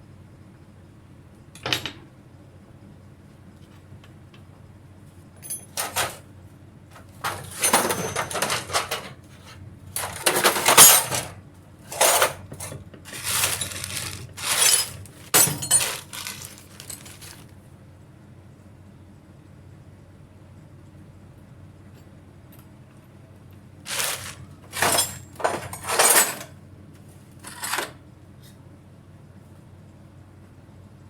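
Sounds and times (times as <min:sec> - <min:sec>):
metal tools clinking and clattering: 0:05.4 - 0:06.2, 0:07.1 - 0:09.2, 0:10.0 - 0:17.4, 0:23.9 - 0:26.6.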